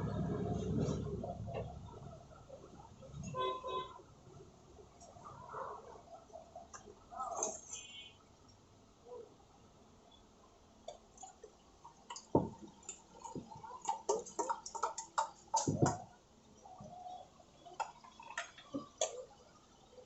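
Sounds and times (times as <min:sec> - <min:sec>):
kitchen utensils clicking and knocking: 0:11.2 - 0:16.1.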